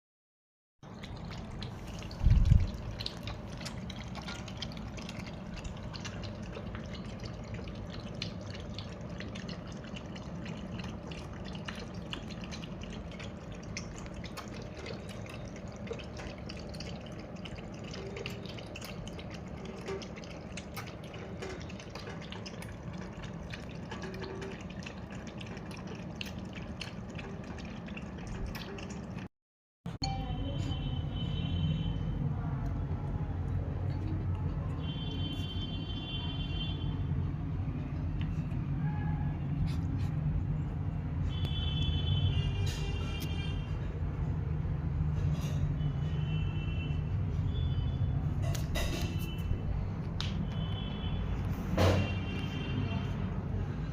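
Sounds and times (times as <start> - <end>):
water dripping: 0.8 - 29.3
water trickling: 0.8 - 29.3.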